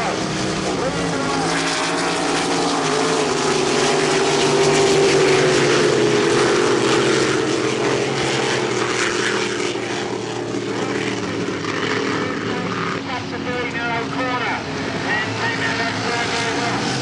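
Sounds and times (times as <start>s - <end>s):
speedboat engines at full throttle: 0.0s - 17.0s.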